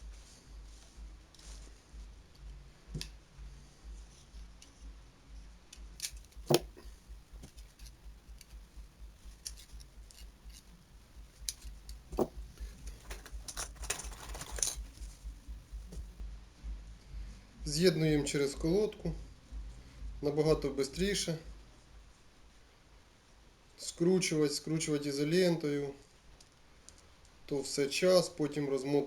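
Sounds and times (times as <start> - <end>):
scraping rustle: 6.0 - 16.2
wire cutters clicking and snipping: 6.0 - 16.2
sharp knocks: 6.2 - 13.9.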